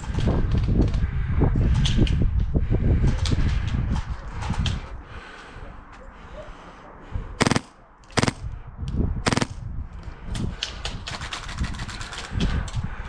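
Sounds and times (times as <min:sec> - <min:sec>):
airsoft guns firing: 0:07.4 - 0:08.5, 0:09.3 - 0:09.6.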